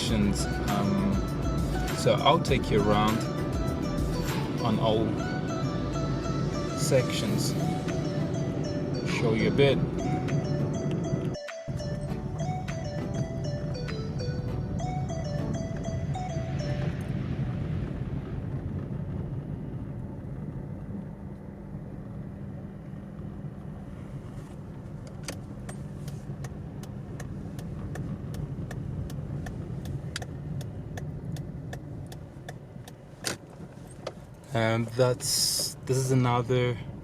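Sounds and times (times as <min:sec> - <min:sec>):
regular ticking: 0:00.0 - 0:17.2, 0:25.1 - 0:37.0
car engine and road hum: 0:00.0 - 0:37.0.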